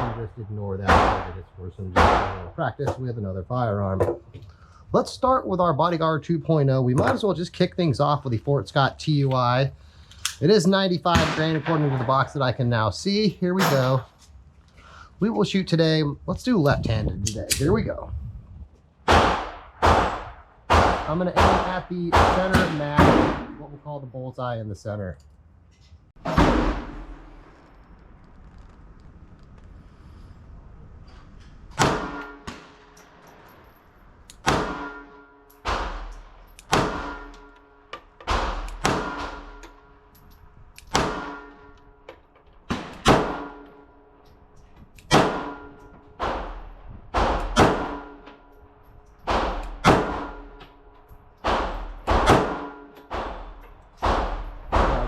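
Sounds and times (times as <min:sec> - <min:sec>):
pistol shots: 0:00.9 - 0:01.4, 0:02.0 - 0:02.4, 0:11.1 - 0:12.1, 0:19.1 - 0:23.6, 0:31.8 - 0:33.0, 0:34.4 - 0:37.4, 0:38.2 - 0:39.7, 0:40.8 - 0:41.8, 0:42.7 - 0:43.8, 0:45.0 - 0:48.2, 0:49.3 - 0:50.5, 0:51.4 - 0:55.0.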